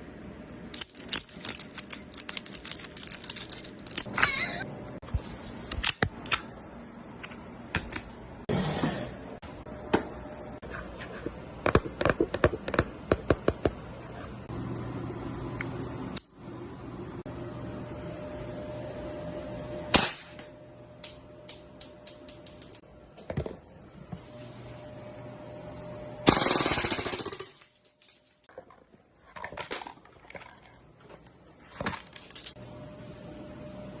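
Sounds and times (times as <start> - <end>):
gun handling clicks and rattles: 0.7 - 4.1.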